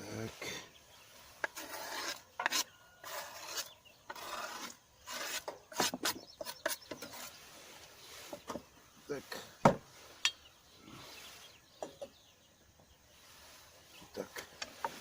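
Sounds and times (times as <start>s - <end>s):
rasping scraping strokes: 1.1s - 8.6s.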